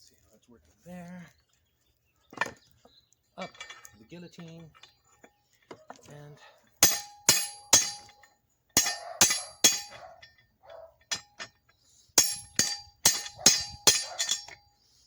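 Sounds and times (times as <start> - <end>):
hammer ringing on steel: 6.8 - 8.2, 8.8 - 10.0, 12.2 - 14.6.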